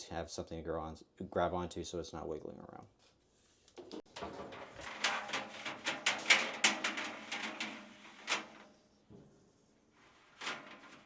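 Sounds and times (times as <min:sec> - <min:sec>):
knocks and scrapes against dryer drum: 0:04.1 - 0:09.4, 0:10.0 - 0:11.0.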